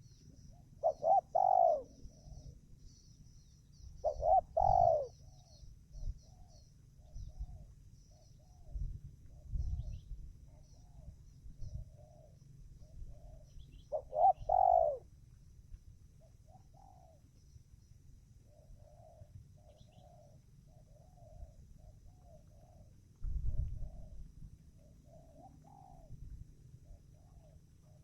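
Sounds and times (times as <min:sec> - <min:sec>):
dove cooing: 0:00.0 - 0:02.8, 0:04.0 - 0:08.8, 0:09.4 - 0:15.1, 0:16.2 - 0:17.3, 0:18.5 - 0:28.0
small birds chirping: 0:00.0 - 0:15.0
low wind rumble: 0:03.7 - 0:15.0, 0:23.0 - 0:24.8.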